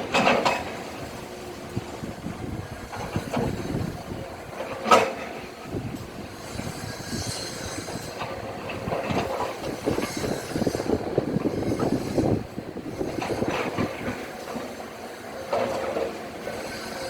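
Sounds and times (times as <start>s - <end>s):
heavy machinery: 0.0s - 17.0s
metallic squeals: 9.8s - 12.4s.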